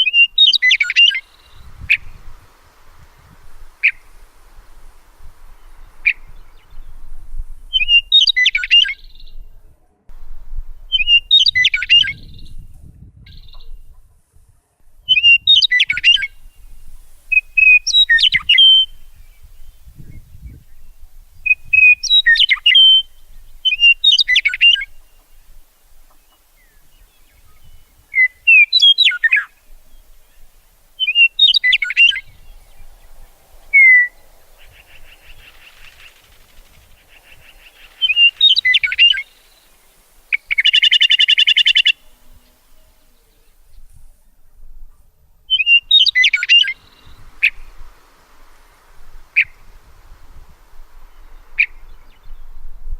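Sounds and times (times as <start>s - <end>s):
songbird chirping: 0.0s - 52.9s
buzzy bird trill: 30.6s - 42.8s.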